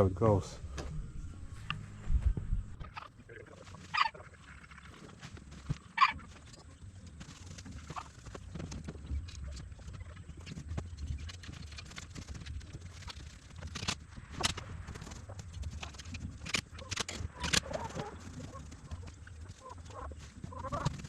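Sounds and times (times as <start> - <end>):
low steady rumble: 0.0 - 7.5
chickens clucking: 0.6 - 10.4, 16.8 - 21.0.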